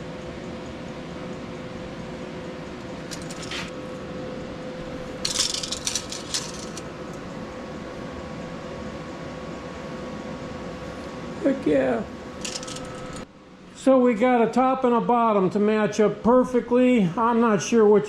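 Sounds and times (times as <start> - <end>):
background hum: 0.0 - 18.0
steel pieces clinking and scraping: 3.0 - 3.7, 5.2 - 6.8, 12.4 - 13.2.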